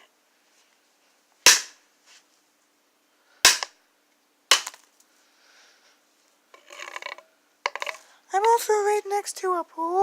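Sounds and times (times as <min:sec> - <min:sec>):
hand tool striking phone battery: 0:03.5 - 0:03.7.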